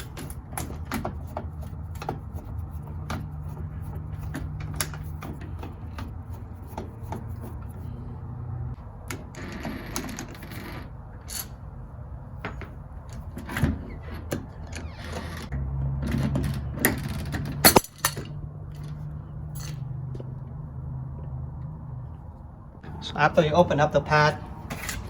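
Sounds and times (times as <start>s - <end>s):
lock housing clicks and scrapes: 0.0s - 8.0s, 12.4s - 19.9s, 24.6s - 25.0s.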